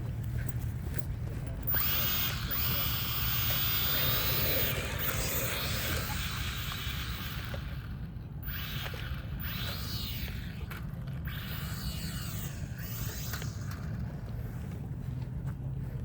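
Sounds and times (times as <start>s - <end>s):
steady low rumble: 0.0s - 16.0s
toy electric motor whining: 1.6s - 14.3s.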